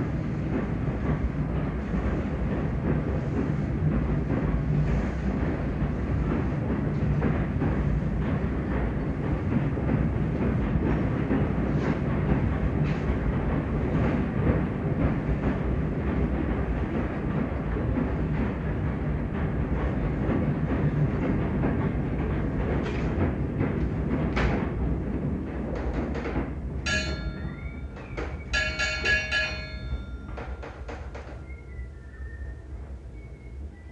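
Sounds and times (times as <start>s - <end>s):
clanks and rail clatter: 0.0s - 33.1s
steam train rumbling on rails: 0.0s - 33.9s
high-pitched train whistle tones: 26.9s - 33.9s.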